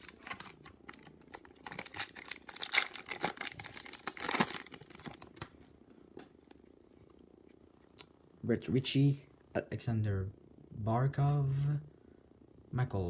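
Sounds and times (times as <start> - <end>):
wrapper tearing and crinkling: 0.0 - 5.5.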